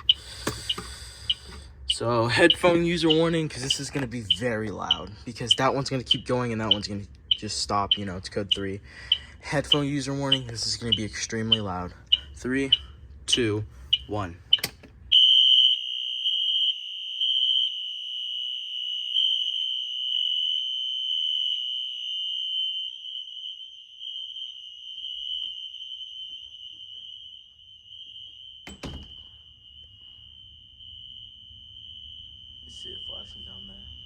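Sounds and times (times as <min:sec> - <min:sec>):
fire alarm horn steady tone: 0:00.0 - 0:34.0
fire alarm horn pulses: 0:09.7 - 0:34.0
thunk: 0:28.7 - 0:29.2.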